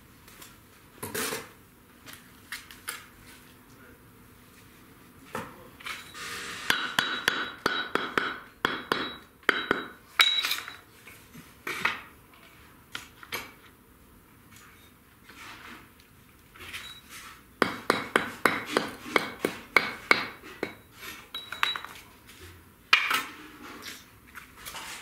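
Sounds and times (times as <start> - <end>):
hammer knocking bricks: 6.7 - 10.4, 17.6 - 20.8.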